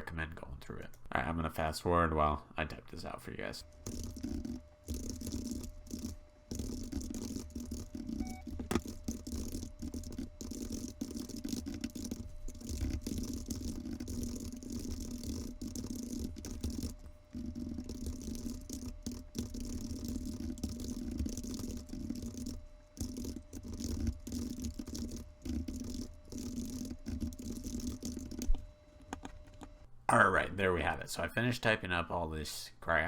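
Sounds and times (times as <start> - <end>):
faint steady hum: 0.0 - 33.0
fast keyboard typing rattle: 3.7 - 28.5.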